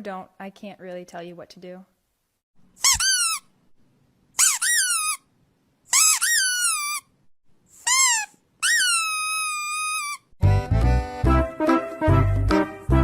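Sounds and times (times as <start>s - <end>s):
high-pitched sliding squeals: 7.8s - 10.3s.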